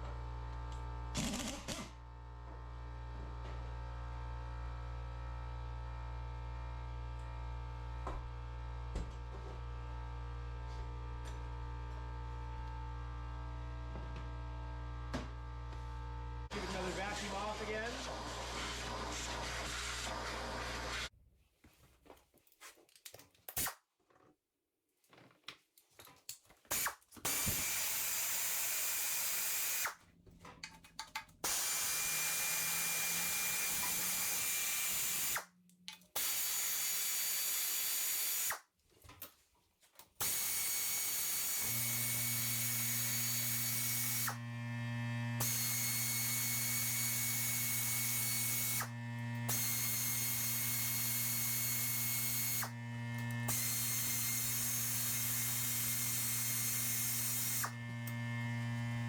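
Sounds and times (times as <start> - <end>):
power tool spinning off bolts: 1.2 - 1.9, 26.7 - 30.0, 31.0 - 35.5, 36.1 - 38.6, 45.4 - 59.0.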